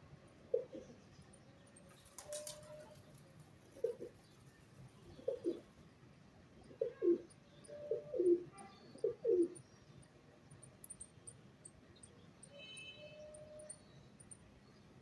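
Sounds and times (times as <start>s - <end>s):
pigeon cooing: 5.2s - 5.6s, 6.8s - 9.6s.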